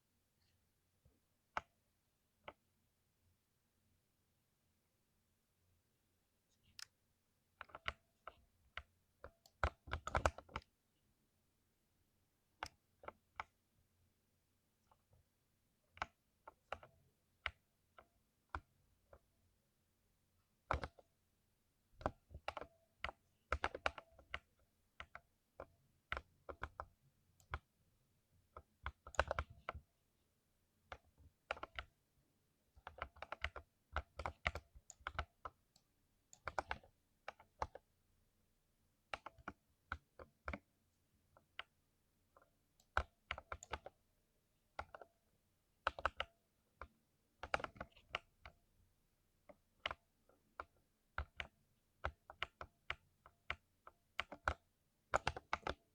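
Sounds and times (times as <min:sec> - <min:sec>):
mechanical keyboard keystroke clicks: 0:32.8 - 0:37.9, 0:42.8 - 0:44.0, 0:45.8 - 0:48.5.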